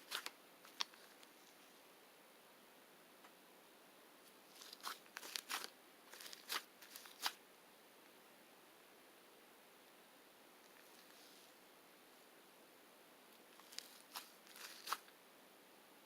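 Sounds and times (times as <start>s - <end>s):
crisp crackles and snaps: 0.0s - 1.6s, 4.5s - 7.4s, 13.6s - 15.1s.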